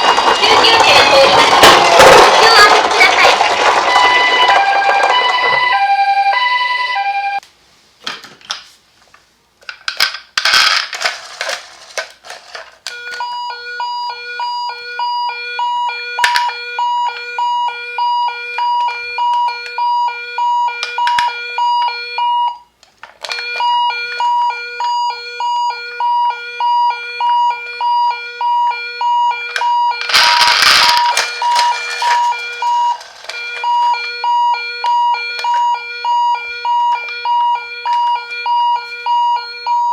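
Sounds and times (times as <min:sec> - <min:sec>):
toy siren beeping: 0:00.0 - 0:07.4, 0:12.9 - 0:22.6, 0:23.2 - 0:39.9
clattering handling noise: 0:09.6 - 0:13.2, 0:29.5 - 0:34.2.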